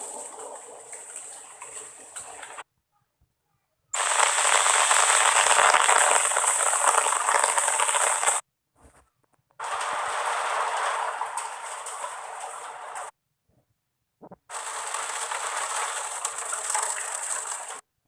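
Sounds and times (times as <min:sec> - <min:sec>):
crackling hiss: 0:00.0 - 0:02.6, 0:04.0 - 0:08.4, 0:09.6 - 0:13.1, 0:14.3 - 0:17.8.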